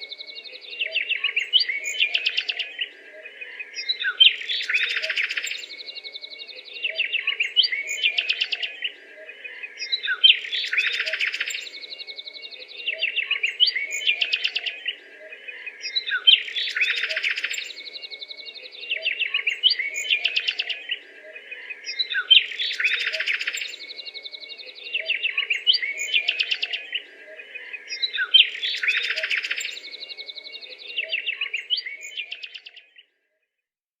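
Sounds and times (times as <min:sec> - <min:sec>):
bird-like chirping and trilling: 0:00.0 - 0:05.8, 0:12.6 - 0:17.8, 0:18.6 - 0:24.0, 0:24.6 - 0:33.0.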